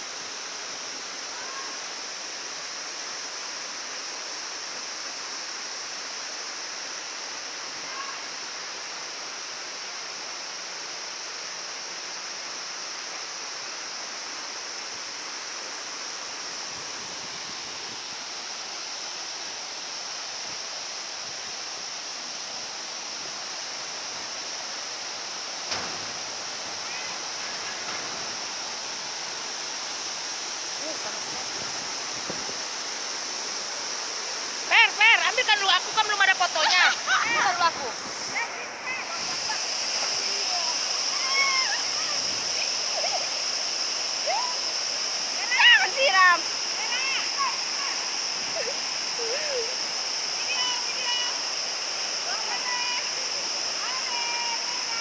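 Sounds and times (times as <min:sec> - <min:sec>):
waterfall rushing: 0:00.0 - 0:55.0.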